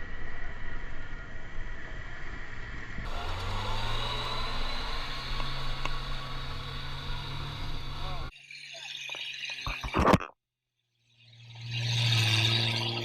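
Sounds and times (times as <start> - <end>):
off-road vehicle engine running: 0.0 - 8.3.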